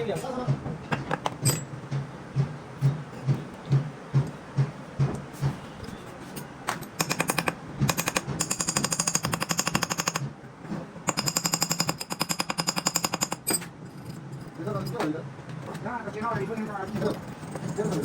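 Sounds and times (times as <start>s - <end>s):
rapid metallic mechanical hammering: 6.8s - 10.4s, 11.0s - 15.1s.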